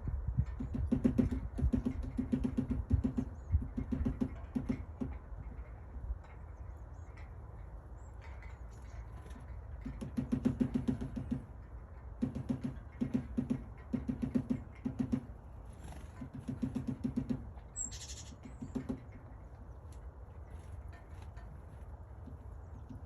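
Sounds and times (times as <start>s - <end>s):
woodpecker tapping wood: 0.5s - 5.6s, 8.7s - 11.6s, 12.2s - 21.5s, 22.2s - 23.0s.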